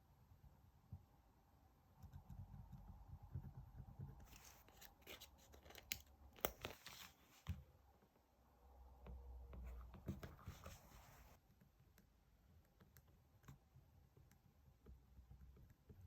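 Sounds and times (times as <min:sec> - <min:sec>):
paper rubbing and shuffling: 0:04.2 - 0:06.0, 0:06.6 - 0:07.6, 0:10.2 - 0:11.4.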